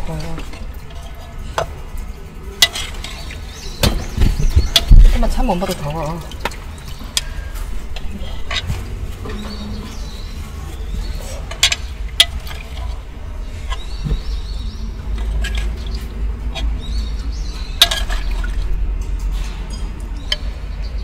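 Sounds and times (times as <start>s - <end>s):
liquid sounds: 0.0s - 20.7s.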